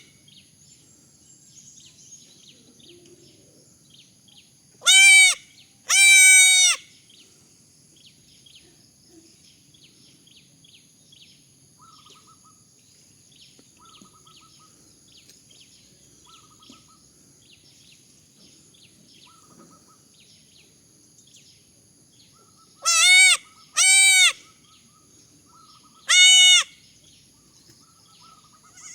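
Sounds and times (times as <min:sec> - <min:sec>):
baby goats bleating: 0:22.8 - 0:24.4, 0:26.1 - 0:26.7, 0:28.6 - 0:28.9
faint chirping: 0:26.7 - 0:28.9.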